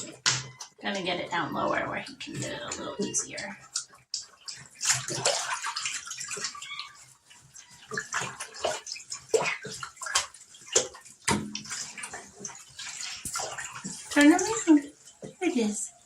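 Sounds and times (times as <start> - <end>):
water splashing in bathtub: 0.0 - 16.0.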